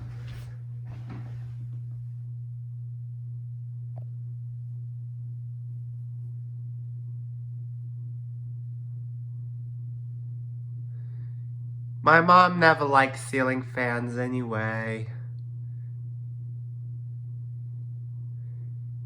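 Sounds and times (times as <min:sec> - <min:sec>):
ceiling fan motor humming: 0:00.0 - 0:02.2, 0:10.7 - 0:19.0.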